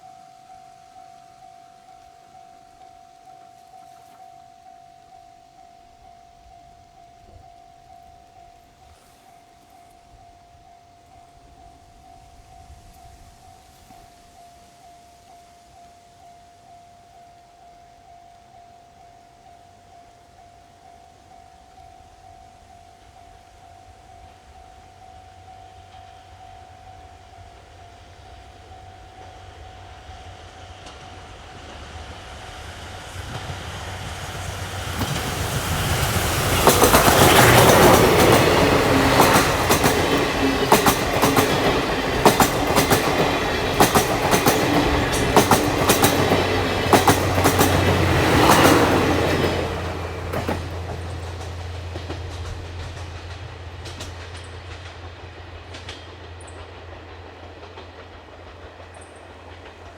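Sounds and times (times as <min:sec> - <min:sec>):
steam train passing: 0:00.0 - 0:59.9
wheels clattering over rail joints: 0:30.8 - 0:59.9.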